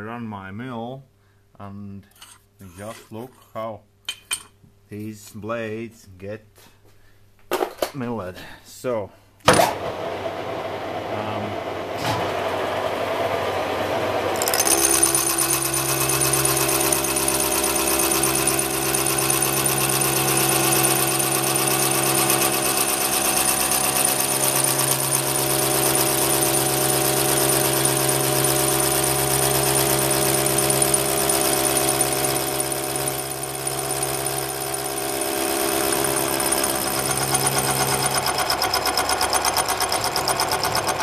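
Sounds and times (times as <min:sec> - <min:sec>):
milling machine cutting steel: 0:14.3 - 0:41.0.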